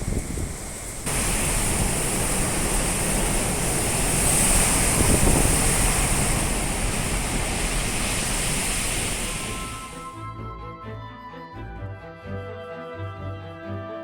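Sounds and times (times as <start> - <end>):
wind and rain rushing: 0.0 - 10.2.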